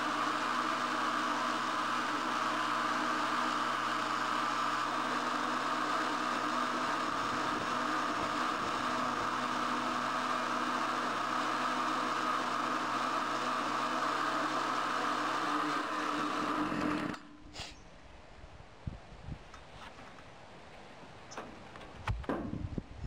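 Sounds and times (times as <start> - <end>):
chainsaw engine at high revs: 0.0 - 17.3.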